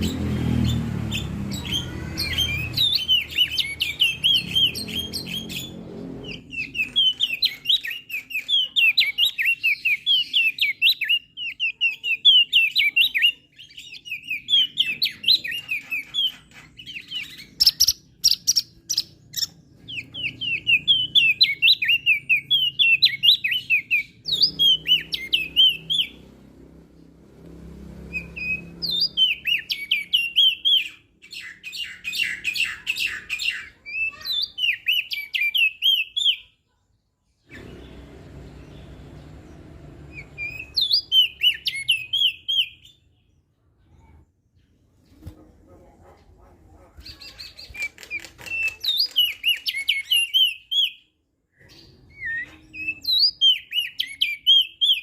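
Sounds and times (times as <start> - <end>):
bird singing high sliding chirps: 0.0 - 36.6, 37.4 - 43.2, 47.3 - 55.0.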